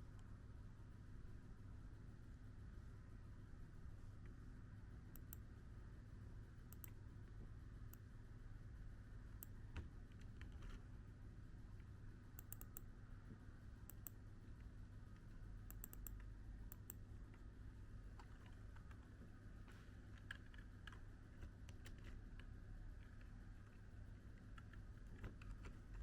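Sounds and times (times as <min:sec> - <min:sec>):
steady low hum: 0:00.0 - 0:26.0
faint sharp clicks: 0:06.7 - 0:07.0, 0:12.4 - 0:12.9, 0:15.7 - 0:17.0.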